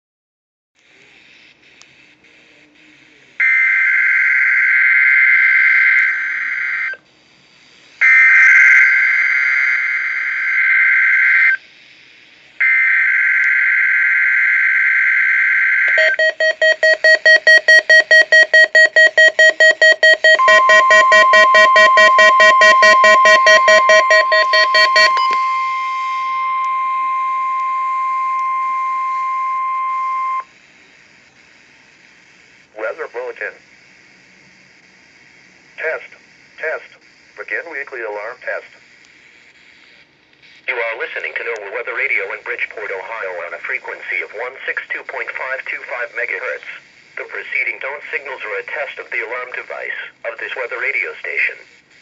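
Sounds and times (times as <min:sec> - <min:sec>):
steady warning alarm tone: 0:12.6 - 0:30.5
digital data bursts: 0:15.9 - 0:30.4
rapid electronic beeping: 0:15.9 - 0:30.4.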